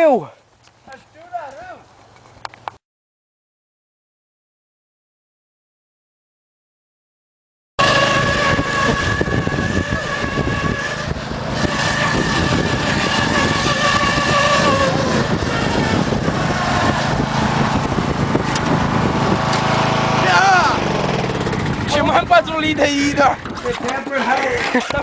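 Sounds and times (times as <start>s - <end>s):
lawn mower engine running: 7.8s - 25.0s.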